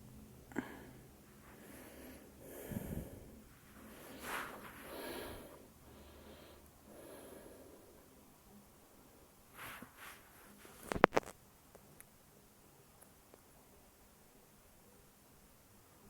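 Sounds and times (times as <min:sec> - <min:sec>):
faint breathing: 0:00.2 - 0:08.3.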